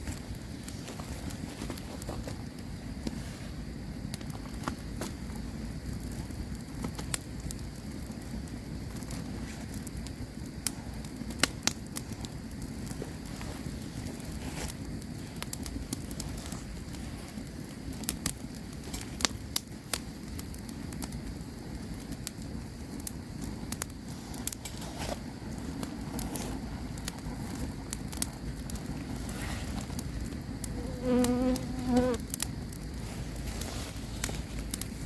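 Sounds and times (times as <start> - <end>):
campfire crackling and popping: 0.0 - 35.0
buzzing insect: 30.7 - 32.2.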